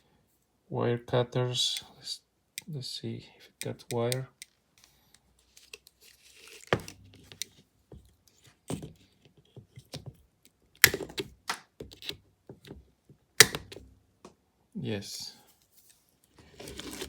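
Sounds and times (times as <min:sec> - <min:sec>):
pliers clicking and snapping on wire: 0:13.4 - 0:13.8.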